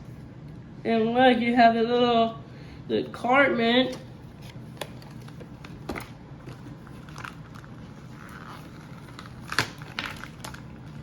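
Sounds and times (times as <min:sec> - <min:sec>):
packaging rustling: 0:04.4 - 0:11.0.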